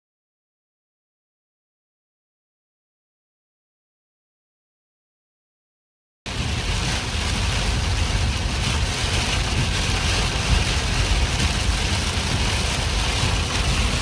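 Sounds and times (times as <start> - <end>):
deep fluttering thunder rumble: 6.3 - 14.0
heavy rain: 6.3 - 14.0
wind: 6.3 - 14.0.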